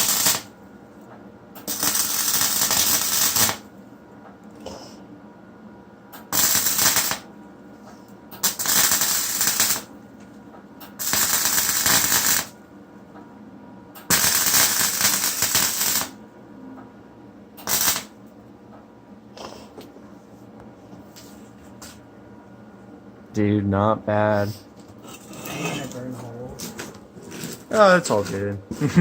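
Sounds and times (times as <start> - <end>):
welding arc crackling: 0.0 - 0.5, 1.6 - 3.7, 6.2 - 7.3, 8.4 - 9.9, 10.8 - 12.6, 14.0 - 16.2, 17.6 - 18.2
man talking: 23.3 - 24.7, 25.6 - 26.8, 27.7 - 29.0.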